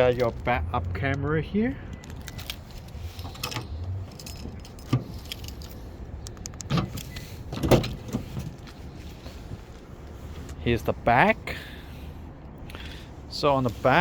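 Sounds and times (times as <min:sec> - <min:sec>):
low steady rumble: 0:00.0 - 0:14.0
hands handling clicks and knocks: 0:02.0 - 0:08.8.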